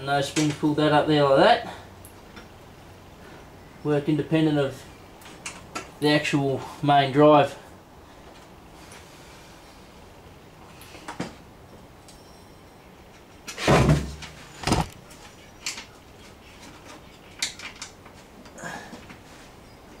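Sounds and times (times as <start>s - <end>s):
metal parts knocking and clunking: 13.2s - 15.0s
heavy thump with a scrape: 13.6s - 14.9s.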